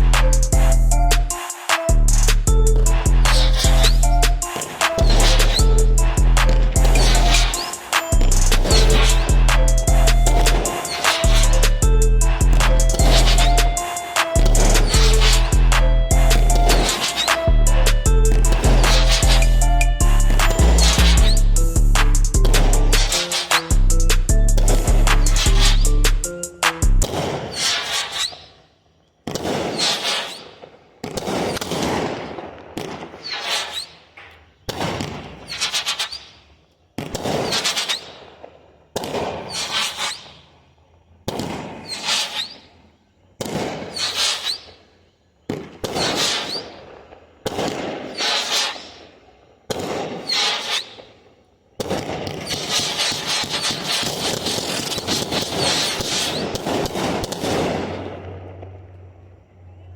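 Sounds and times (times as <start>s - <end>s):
firework cake shots: 1.2s - 19.6s, 22.0s - 23.8s, 24.7s - 28.6s, 29.3s - 34.0s, 41.3s - 42.7s, 43.4s - 44.8s, 45.5s - 46.8s, 49.7s - 51.1s, 51.8s - 57.9s.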